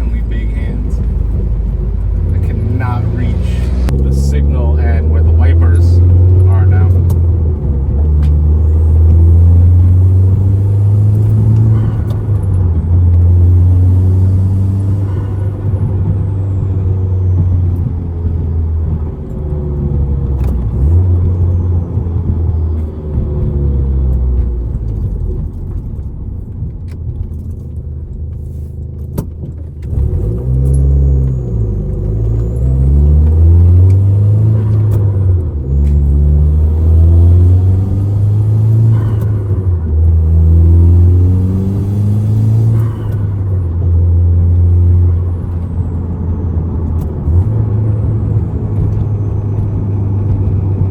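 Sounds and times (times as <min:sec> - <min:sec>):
turbocharged car engine accelerating: 0:00.0 - 0:50.9.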